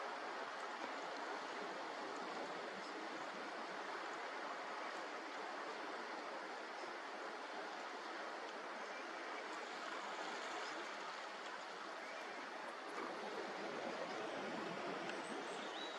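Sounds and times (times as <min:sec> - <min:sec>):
waves breaking on shore: 0:00.0 - 0:15.9.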